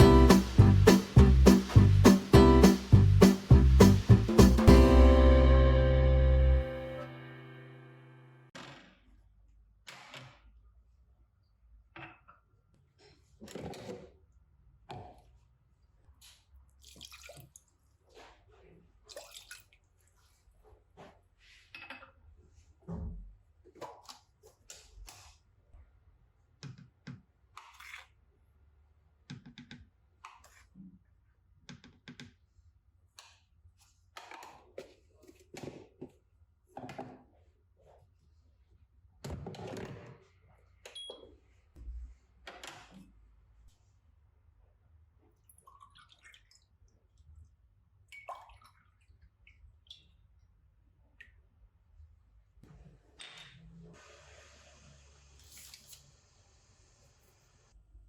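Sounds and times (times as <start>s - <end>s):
household objects being handled: 33.2s - 38.3s.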